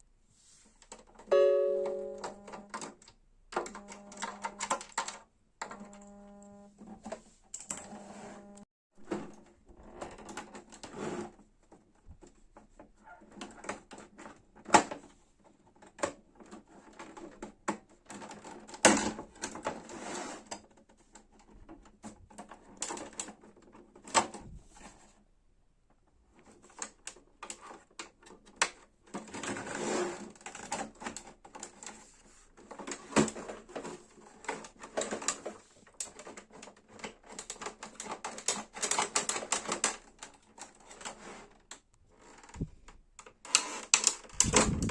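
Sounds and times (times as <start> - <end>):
printer mechanism clicking and rattling: 2.2 - 5.9, 20.6 - 24.4, 30.4 - 44.9.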